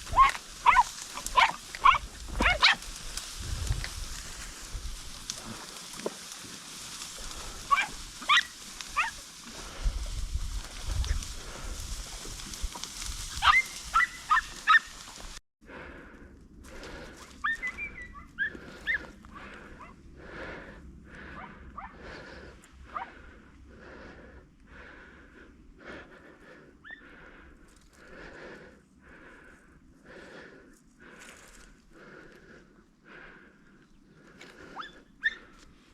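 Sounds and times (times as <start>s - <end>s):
dog yelping: 0.1s - 2.8s, 7.7s - 9.2s, 13.4s - 15.0s, 17.4s - 19.0s, 21.8s - 22.0s, 34.8s - 35.4s
dog yips: 0.1s - 2.8s, 7.7s - 9.2s, 13.4s - 14.9s, 17.4s - 19.0s, 34.8s - 35.4s.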